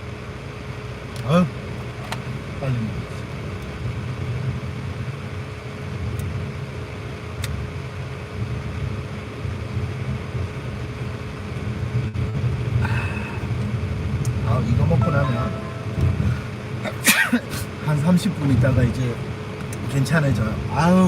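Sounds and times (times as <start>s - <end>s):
steady low rumble: 12.2s - 18.0s
faint steady hum: 12.7s - 20.5s.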